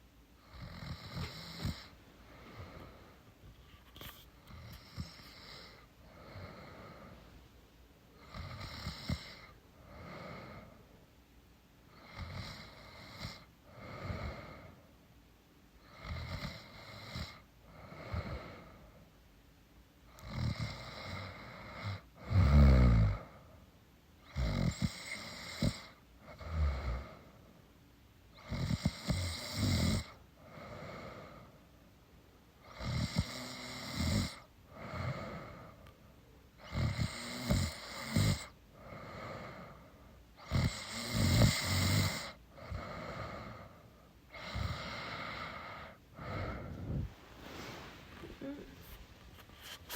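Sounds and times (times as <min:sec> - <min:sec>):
woman snoring: 0:00.4 - 0:01.9, 0:08.2 - 0:10.7, 0:20.2 - 0:23.3, 0:24.3 - 0:27.2, 0:28.4 - 0:31.4, 0:32.7 - 0:35.8, 0:36.6 - 0:39.8, 0:40.4 - 0:43.7, 0:44.3 - 0:49.1.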